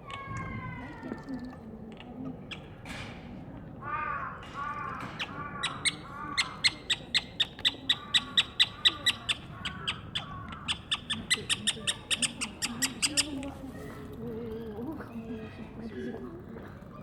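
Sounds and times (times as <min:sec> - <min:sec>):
harsh caw-like calls: 0:03.8 - 0:07.0, 0:07.7 - 0:13.2.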